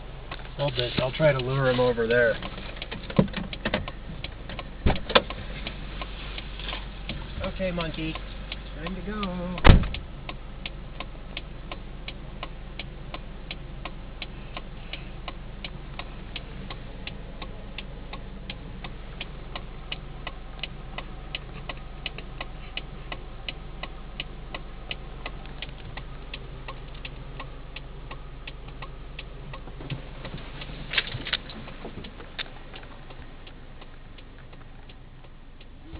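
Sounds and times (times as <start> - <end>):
steady low hum: 0.0 - 35.9
turn signal ticking: 0.0 - 35.9.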